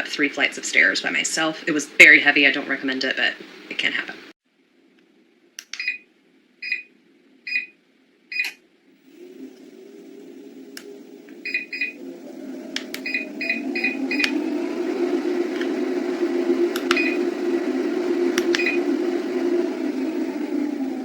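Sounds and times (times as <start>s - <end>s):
treadmill motor and belt hum: 9.0s - 21.0s.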